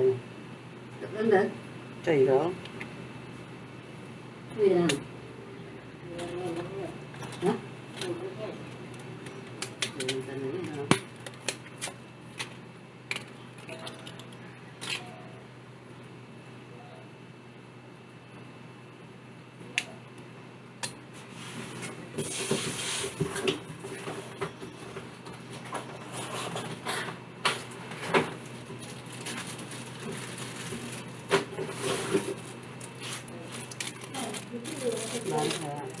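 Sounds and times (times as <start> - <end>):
steady low hum: 0.0 - 36.0
scraping and handling noises: 21.2 - 36.0.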